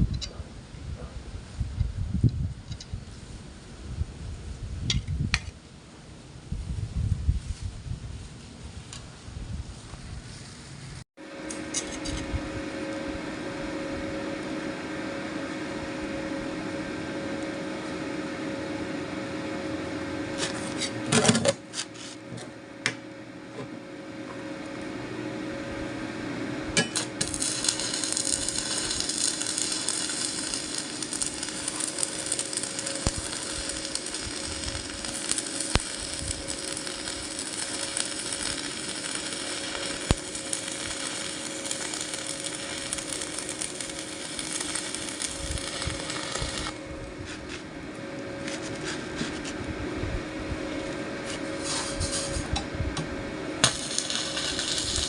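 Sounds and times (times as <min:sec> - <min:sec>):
arc welding crackle: 0:11.4 - 0:18.2, 0:26.8 - 0:49.4, 0:53.6 - 0:55.0
low hum: 0:22.6 - 0:55.0.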